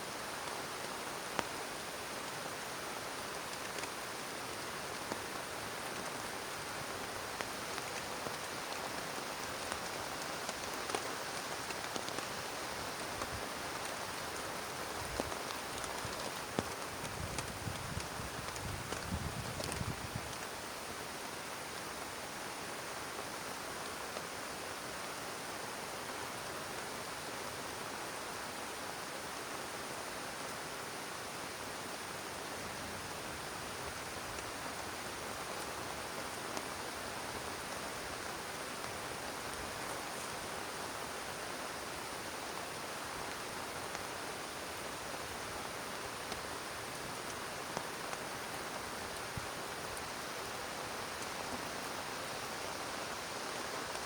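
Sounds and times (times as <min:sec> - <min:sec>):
heavy rain hiss: 0:00.0 - 0:54.0
raindrops ticking: 0:15.0 - 0:20.4.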